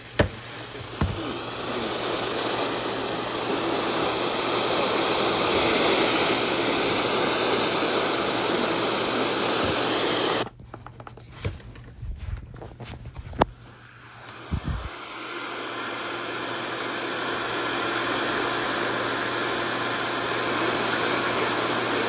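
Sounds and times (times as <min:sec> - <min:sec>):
radio static hiss: 0:00.0 - 0:10.4.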